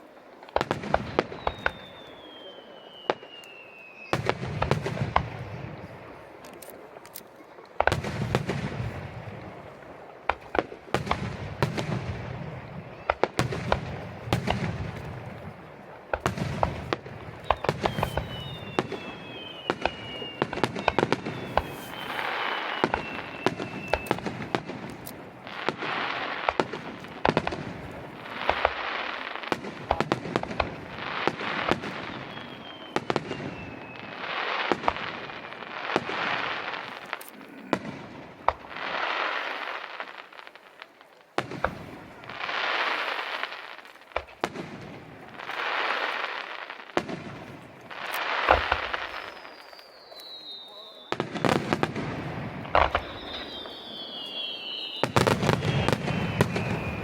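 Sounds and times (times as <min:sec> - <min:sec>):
crackling firework pops: 0:00.0 - 0:57.0
falling firework whistles: 0:00.6 - 0:05.0, 0:17.4 - 0:27.4, 0:30.9 - 0:37.2, 0:48.0 - 0:57.0
firework shells booming: 0:10.2 - 0:40.1, 0:41.4 - 0:57.0.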